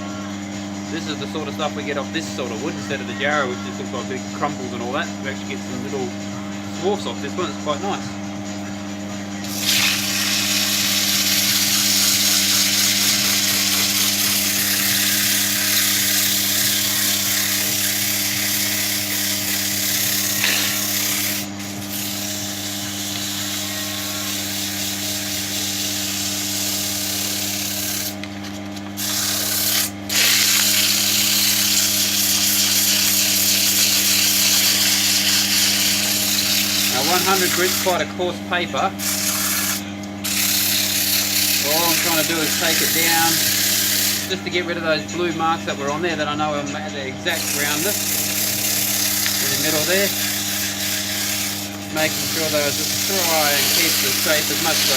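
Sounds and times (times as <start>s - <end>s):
lathe motor hum: 0.0s - 54.9s
shop fan: 0.0s - 54.9s
sandpaper rasping on spinning wood: 9.4s - 45.6s, 47.2s - 54.9s.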